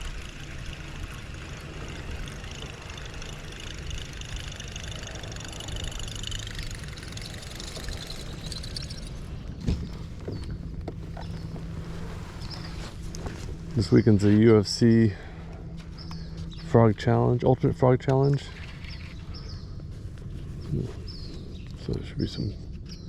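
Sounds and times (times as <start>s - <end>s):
fishing reel whirring clatter: 0.0s - 14.0s
steady low hum: 0.0s - 23.0s.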